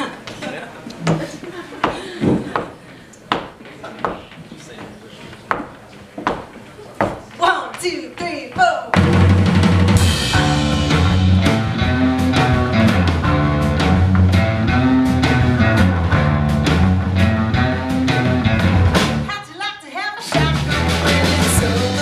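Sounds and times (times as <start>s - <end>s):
drums keeping a steady beat: 5.5s - 19.6s, 20.2s - 22.0s
walking bass line: 7.4s - 19.3s, 20.3s - 22.0s
guitar: 9.0s - 22.0s.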